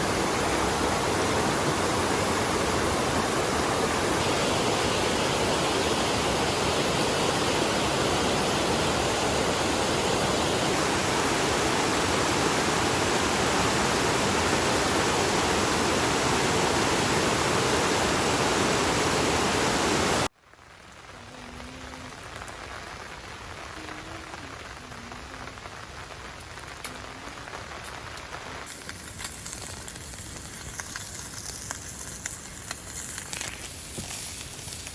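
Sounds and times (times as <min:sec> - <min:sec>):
heavy rain: 0:00.0 - 0:30.7
light rain: 0:00.0 - 0:34.9.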